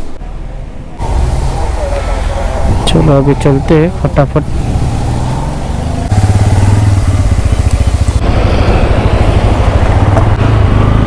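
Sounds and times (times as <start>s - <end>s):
hiss: 1.0s - 3.0s, 6.1s - 9.7s
motorcycle engine running: 1.0s - 11.0s.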